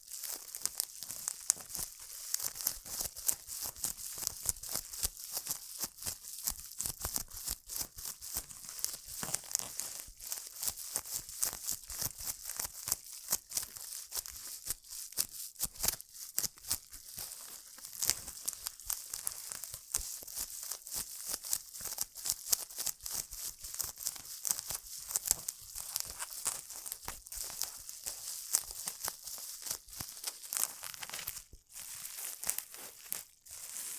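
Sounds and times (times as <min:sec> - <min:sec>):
bubble wrap crinkling: 0:00.0 - 0:33.9.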